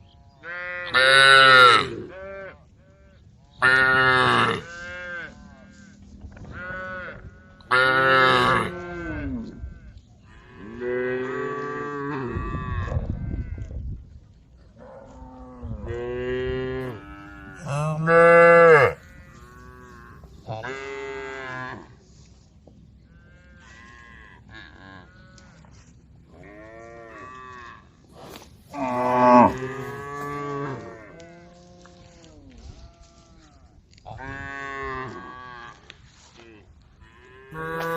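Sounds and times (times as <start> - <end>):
cattle mooing: 15.9 - 21.9, 28.7 - 31.2, 37.4 - 37.9.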